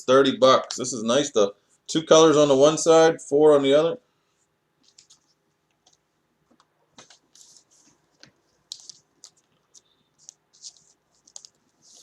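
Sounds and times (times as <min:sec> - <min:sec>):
trading cards rustling: 0:04.8 - 0:06.0, 0:07.0 - 0:12.0
sharp clicks of packaging: 0:08.2 - 0:11.6.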